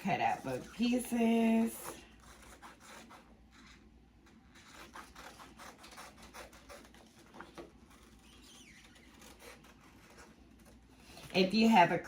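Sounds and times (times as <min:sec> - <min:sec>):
scissors cutting paper: 0:00.0 - 0:12.0.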